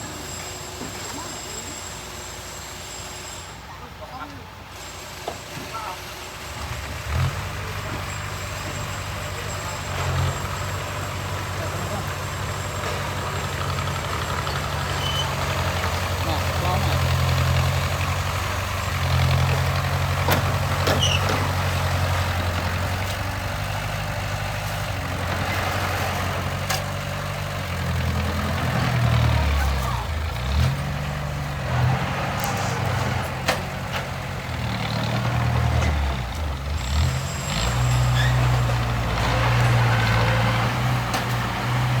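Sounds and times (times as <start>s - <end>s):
heavy diesel engine running: 0.0s - 42.0s
sharp knocks and clanks: 19.5s - 21.8s.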